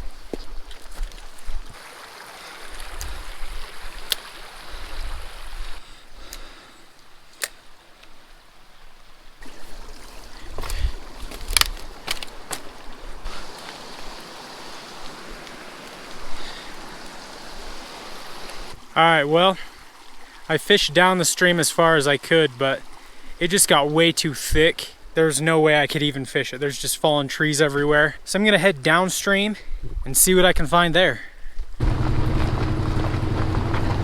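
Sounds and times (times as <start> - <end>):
mountain stream rushing: 1.7 - 5.8, 9.4 - 23.8, 31.8 - 34.0
low thumps: 31.8 - 34.0.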